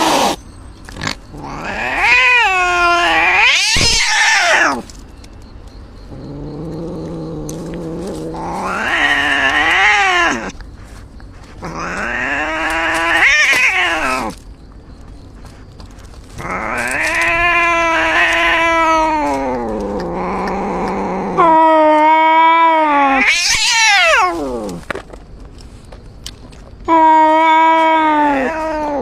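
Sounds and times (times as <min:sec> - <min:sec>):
cat growling: 0:01.0 - 0:04.8, 0:06.1 - 0:10.6, 0:11.6 - 0:14.4, 0:16.4 - 0:24.8, 0:26.9 - 0:29.0
cat yowling: 0:01.3 - 0:04.8, 0:06.8 - 0:10.5, 0:11.6 - 0:14.4, 0:16.4 - 0:24.8, 0:26.9 - 0:29.0.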